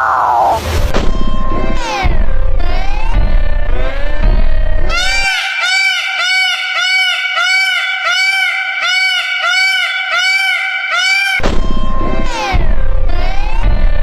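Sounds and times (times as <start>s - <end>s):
animal high-pitched call: 4.9s - 11.4s.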